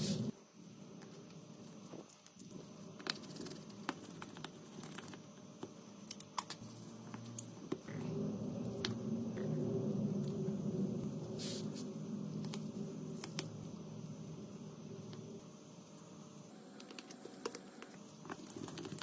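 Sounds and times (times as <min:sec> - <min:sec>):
low rumbling noise: 0:00.0 - 0:00.9, 0:06.4 - 0:16.6.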